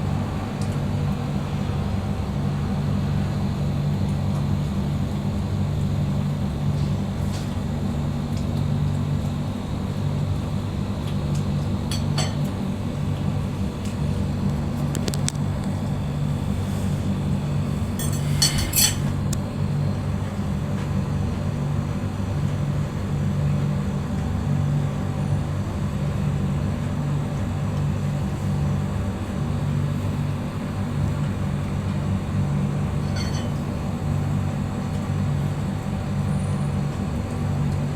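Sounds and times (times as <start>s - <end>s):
steady low hum: 0.0s - 37.9s
clinking glass or dishes: 33.0s - 33.6s.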